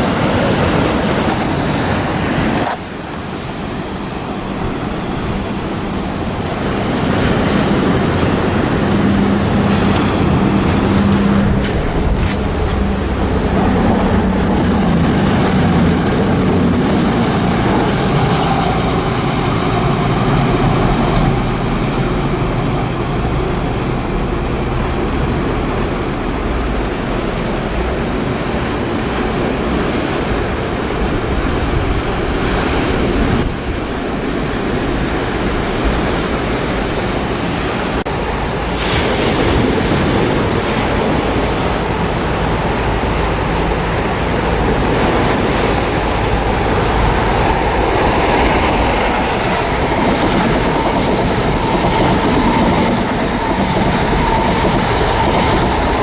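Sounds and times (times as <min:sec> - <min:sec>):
sea waves surging against wall: 0:00.0 - 0:56.0
wind on microphone: 0:00.0 - 0:56.0
low rumble: 0:07.8 - 0:29.6.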